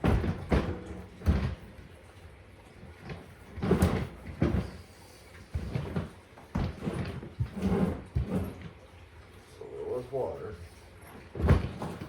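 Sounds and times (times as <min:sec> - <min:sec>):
dishwasher knocks and clunks: 0:00.0 - 0:01.7, 0:11.4 - 0:12.0.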